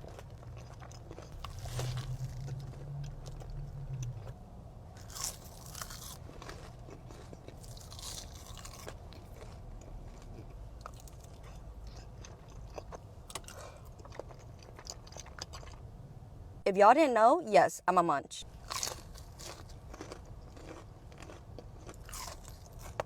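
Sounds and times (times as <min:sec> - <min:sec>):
crunchy bites of sandwich: 0:00.0 - 0:04.4, 0:05.0 - 0:15.8, 0:18.6 - 0:23.0
wet chewing: 0:00.0 - 0:04.4, 0:05.0 - 0:15.8, 0:18.6 - 0:23.0.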